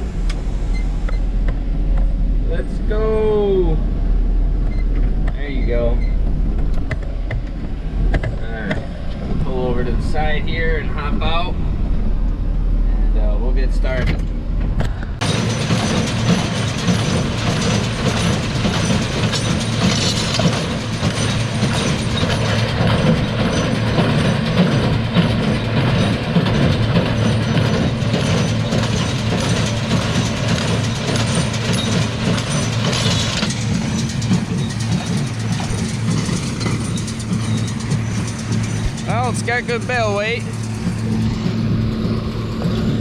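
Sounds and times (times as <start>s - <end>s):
tractor engines droning: 0.0s - 43.0s
baler mechanical clatter: 13.2s - 43.0s.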